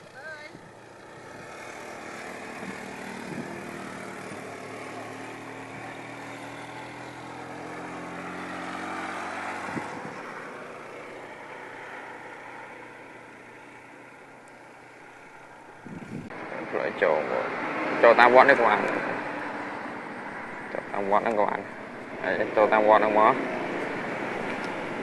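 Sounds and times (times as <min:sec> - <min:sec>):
vehicle engine running: 0:00.0 - 0:25.0.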